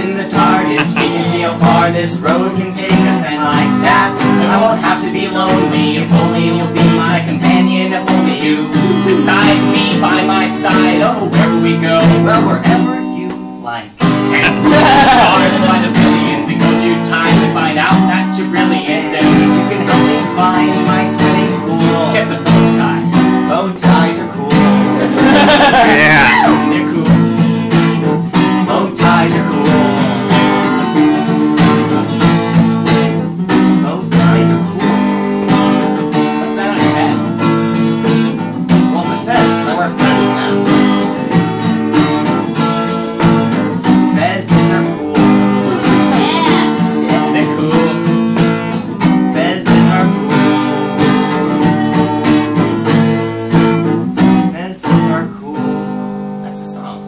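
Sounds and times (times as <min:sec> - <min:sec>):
acoustic guitar strumming: 0:00.0 - 0:57.0.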